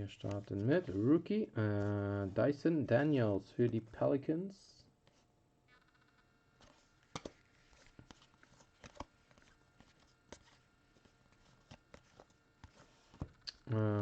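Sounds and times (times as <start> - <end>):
trading cards clicking and tapping: 5.7 - 14.0.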